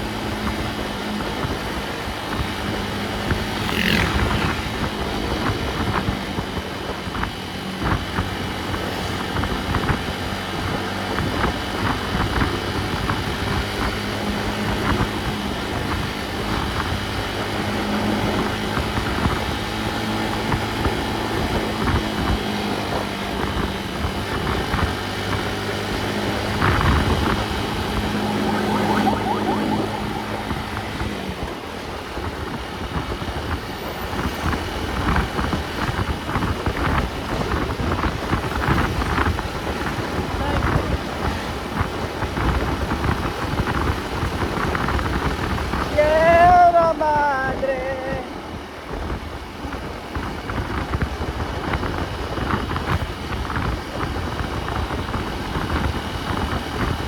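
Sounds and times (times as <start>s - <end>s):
vehicle engine drone: 0.0s - 45.8s
road noise: 0.0s - 57.0s.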